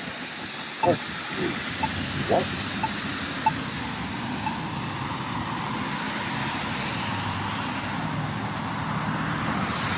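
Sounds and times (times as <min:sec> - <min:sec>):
road traffic noise: 0:00.0 - 0:09.9
pedestrian button beep: 0:00.8 - 0:03.6.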